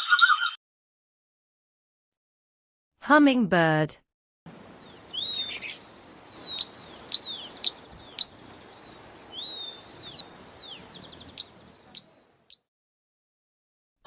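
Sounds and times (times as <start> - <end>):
hummingbird sharp chips: 4.5 - 12.1
hummingbird squeaky chirps: 4.6 - 12.6.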